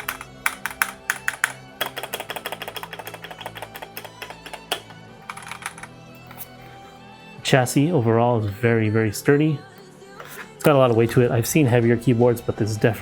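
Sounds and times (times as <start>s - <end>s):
mechanical keyboard clacking: 0.0s - 4.8s
background music: 0.0s - 13.0s.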